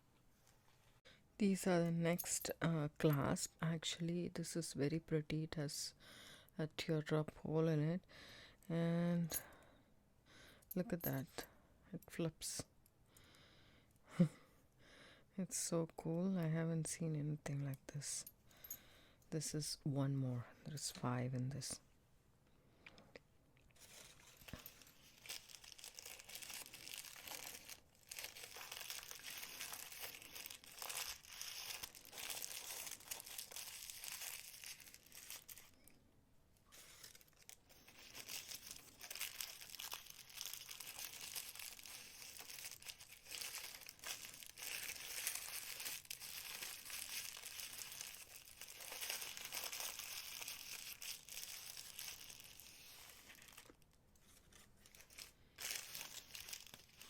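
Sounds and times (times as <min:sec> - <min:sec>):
packaging crinkling and rustling: 0:23.8 - 0:35.8, 0:36.7 - 0:57.0.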